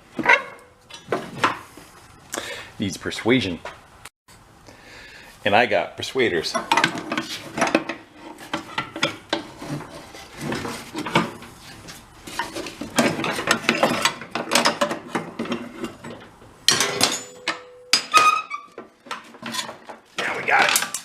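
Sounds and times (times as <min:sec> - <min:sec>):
metal tools clinking: 0:12.3 - 0:19.8.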